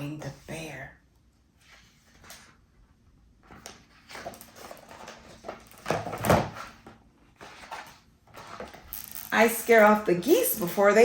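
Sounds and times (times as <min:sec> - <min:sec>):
book pages rustling: 0:01.6 - 0:02.7, 0:03.4 - 0:08.8.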